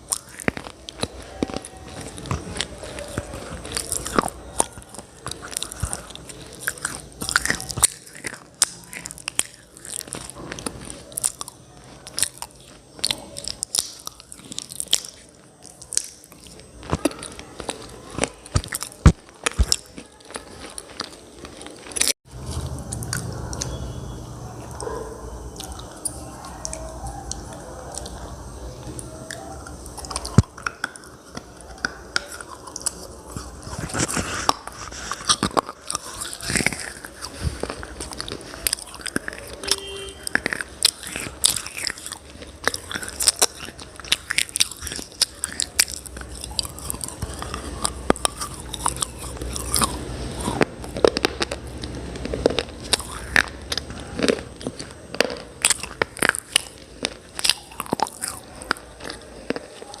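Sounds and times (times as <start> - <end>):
crunching and snapping clay: 0.0 - 60.0.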